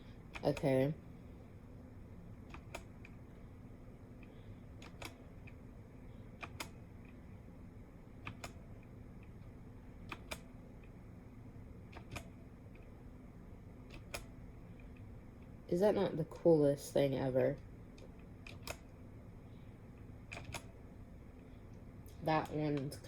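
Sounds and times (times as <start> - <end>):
mechanical keyboard keys clicking: 2.5 - 3.2, 4.8 - 5.6, 6.4 - 7.2, 8.2 - 8.6, 10.1 - 10.5, 11.9 - 12.4, 13.9 - 14.3, 18.0 - 18.9, 20.3 - 20.7.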